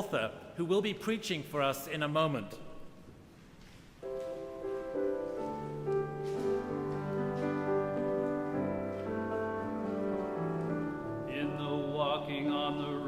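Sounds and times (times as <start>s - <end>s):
keyboard playing hymn chords: 4.0s - 13.0s.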